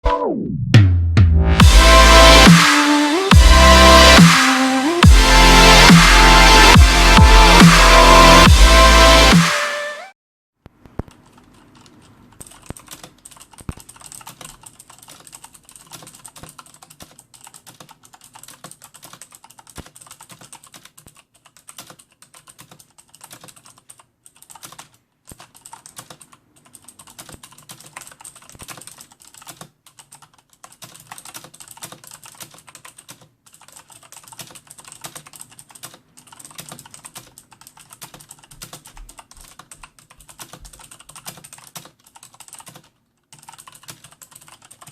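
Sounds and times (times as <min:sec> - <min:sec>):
fast typing on clicky keyboard: 0:10.8 - 0:44.9.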